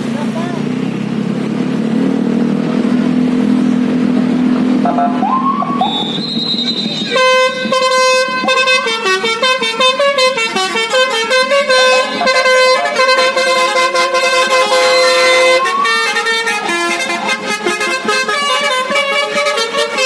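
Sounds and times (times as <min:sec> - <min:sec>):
musical air horn playing a tune: 0:04.8 - 0:20.0.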